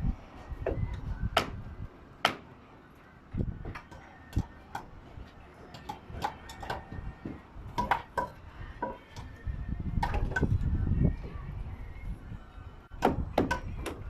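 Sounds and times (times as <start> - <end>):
hammering on timber: 5.9 - 9.0, 13.0 - 14.0.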